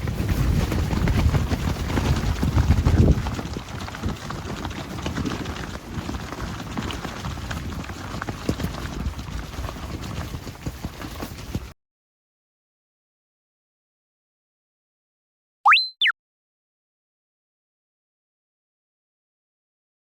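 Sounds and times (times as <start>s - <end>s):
wind buffeting microphone: 0.0s - 5.3s.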